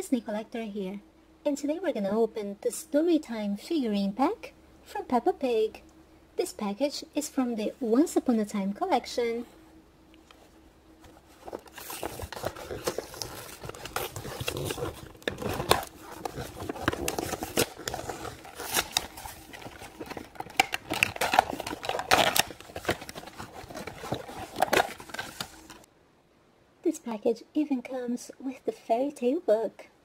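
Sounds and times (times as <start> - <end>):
plastic packaging crinkling: 11.0 - 25.9.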